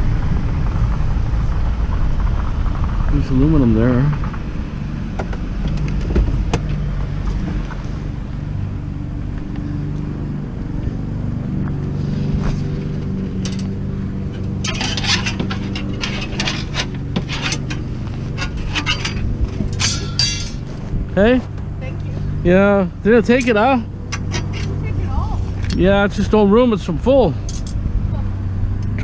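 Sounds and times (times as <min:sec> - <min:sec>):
truck engine running: 0:00.0 - 0:29.0
metal clinking and rattling: 0:12.6 - 0:20.8, 0:23.4 - 0:24.9, 0:27.4 - 0:27.8.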